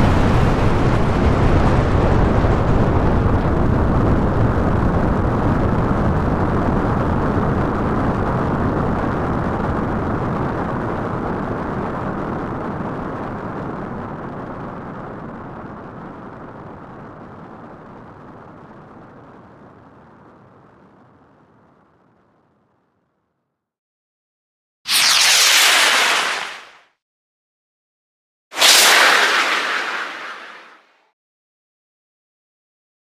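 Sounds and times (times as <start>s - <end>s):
rocket exhaust rumble: 0.0s - 22.0s, 28.6s - 30.9s.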